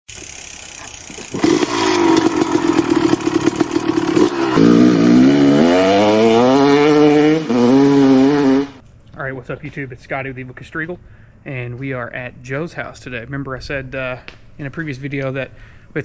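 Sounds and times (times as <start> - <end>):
motorcycle engine revving: 0.1 - 8.8.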